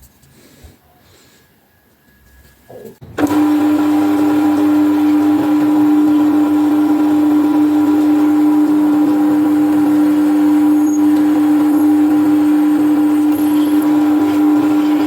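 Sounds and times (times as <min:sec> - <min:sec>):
angle grinder whining: 0:03.2 - 0:15.0.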